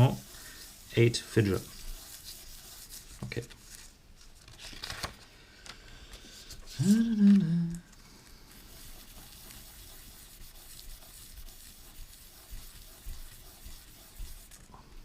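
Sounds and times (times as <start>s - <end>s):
metal rubbed on sandpaper: 0.0s - 3.8s, 8.5s - 14.7s.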